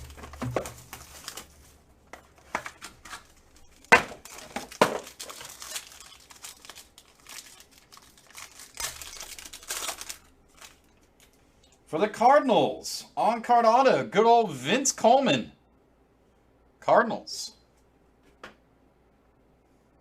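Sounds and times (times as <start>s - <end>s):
plastic wrapping ripping: 0.0s - 1.7s, 2.4s - 11.4s
plastic wrapping crinkling: 0.0s - 11.5s.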